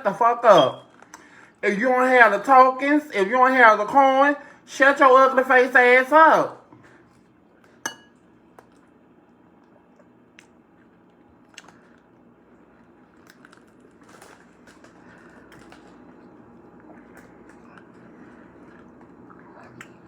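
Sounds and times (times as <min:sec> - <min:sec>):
soft chewing: 0:06.7 - 0:20.0.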